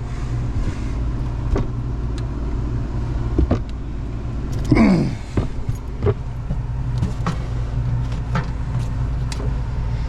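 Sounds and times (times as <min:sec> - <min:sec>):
hvac system humming: 0:00.0 - 0:10.0.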